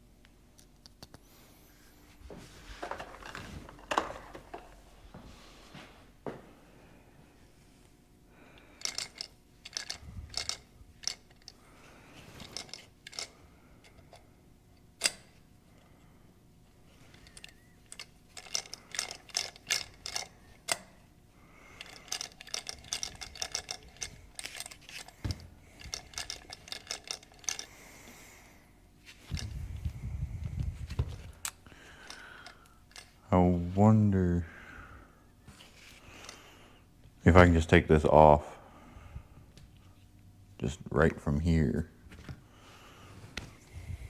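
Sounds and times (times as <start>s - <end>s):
socket ratchet clicking: 8.8s - 11.6s, 12.4s - 14.1s, 14.9s - 15.4s, 17.1s - 20.9s, 21.8s - 27.7s.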